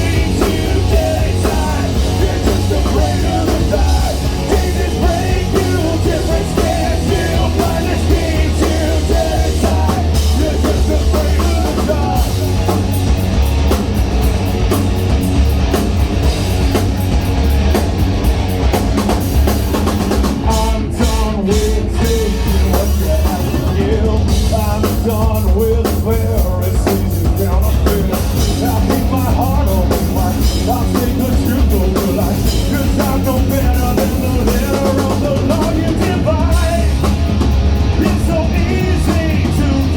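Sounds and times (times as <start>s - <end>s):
person singing: 0.0s - 12.4s, 38.0s - 39.9s
live rock band playing: 0.0s - 39.9s.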